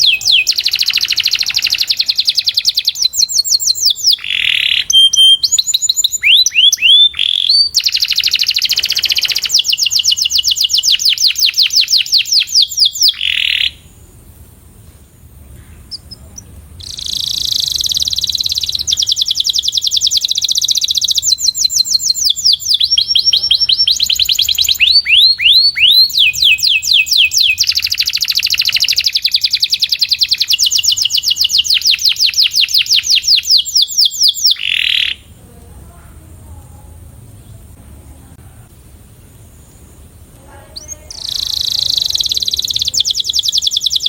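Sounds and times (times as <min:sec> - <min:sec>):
canary singing trills: 0:00.0 - 0:14.3, 0:15.2 - 0:37.8, 0:39.4 - 0:44.0.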